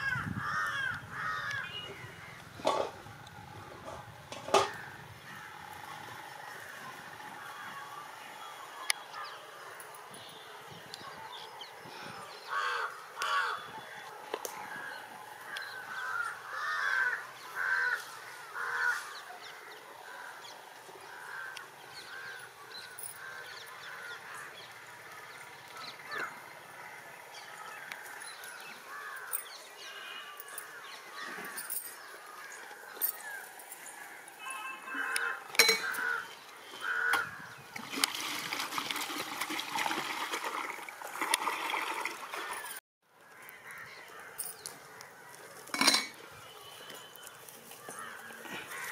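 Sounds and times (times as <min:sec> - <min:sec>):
fowl honking calls: 0:34.3 - 0:37.4.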